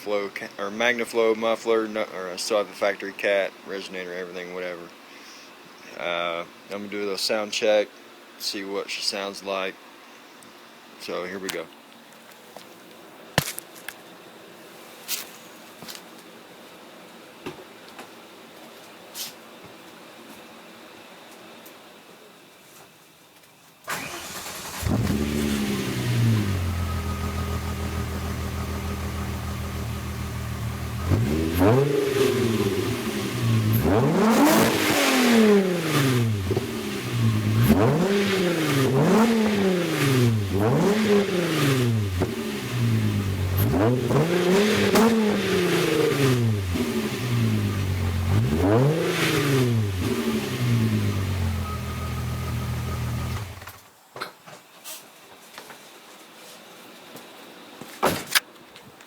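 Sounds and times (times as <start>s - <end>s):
car engine revving: 23.9s - 53.6s
car engine starting and idling: 23.9s - 53.7s.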